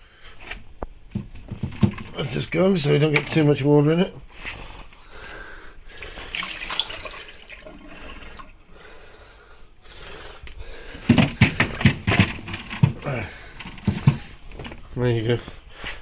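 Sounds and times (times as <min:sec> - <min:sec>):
knocks and clatter: 0:01.1 - 0:03.4, 0:11.0 - 0:14.9
steamer hissing and water trickling: 0:06.2 - 0:08.7.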